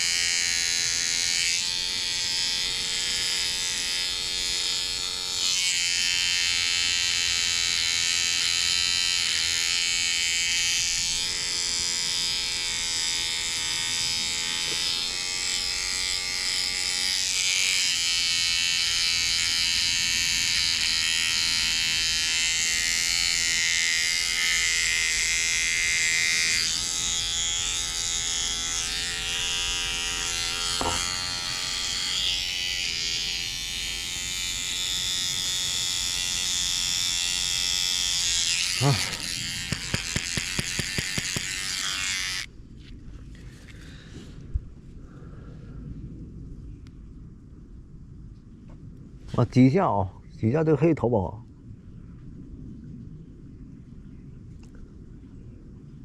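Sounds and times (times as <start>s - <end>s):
electric shaver buzzing: 0.0s - 42.5s.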